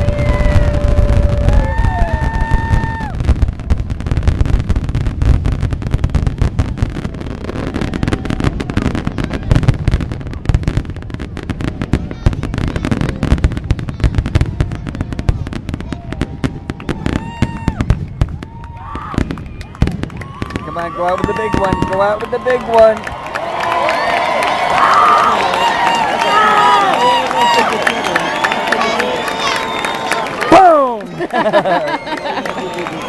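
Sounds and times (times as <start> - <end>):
fireworks booming: 0.0 - 23.2
fireworks crackling: 0.0 - 33.0.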